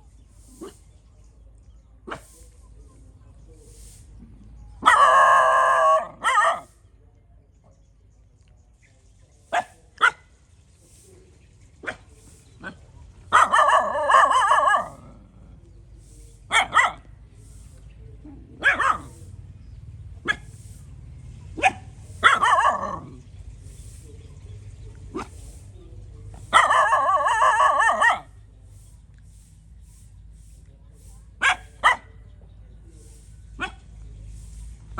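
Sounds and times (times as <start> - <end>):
dog barking: 4.8 - 6.8, 9.5 - 10.3, 11.8 - 15.2, 16.5 - 17.1, 18.4 - 19.3, 20.2 - 20.6, 21.5 - 23.2, 26.5 - 28.4, 31.4 - 32.2, 33.6 - 33.9.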